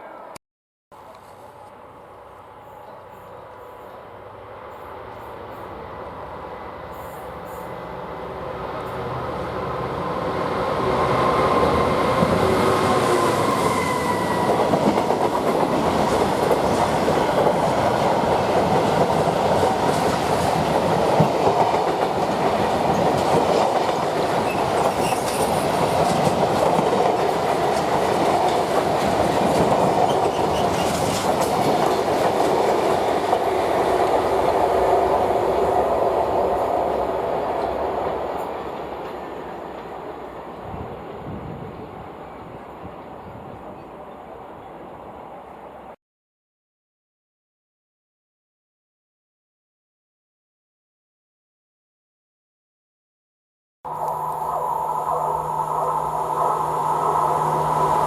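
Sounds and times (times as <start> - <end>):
train wheels clattering over rails: 14.4 - 34.6.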